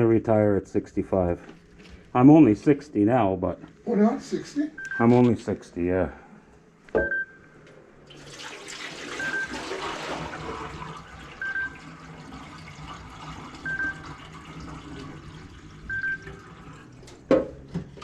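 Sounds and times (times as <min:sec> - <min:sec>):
water splashing in a sink: 0:08.1 - 0:17.3.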